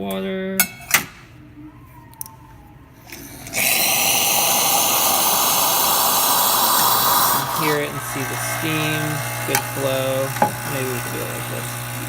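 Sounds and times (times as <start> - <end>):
hot water and steam hissing: 3.4 - 12.0.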